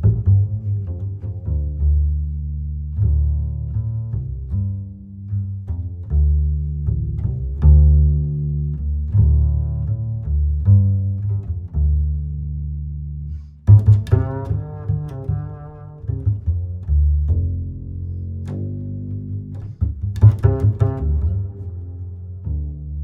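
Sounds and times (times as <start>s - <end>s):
music with deep string bass: 0.0s - 23.0s.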